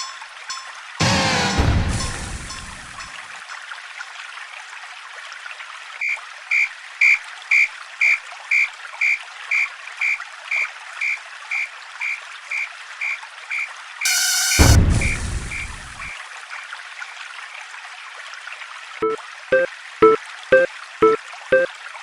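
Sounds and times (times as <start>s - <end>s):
level crossing warning bell: 0.0s - 0.8s, 2.0s - 3.1s, 19.0s - 21.7s.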